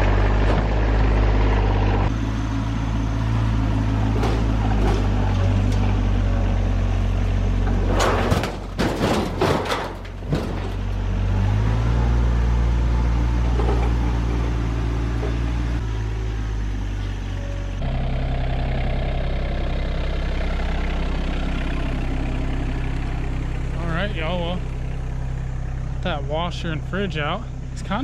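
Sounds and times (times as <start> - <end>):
tractor diesel engine running: 0.0 - 28.0
sharp clanks and crunches: 4.0 - 6.0, 7.6 - 11.0, 13.5 - 15.4.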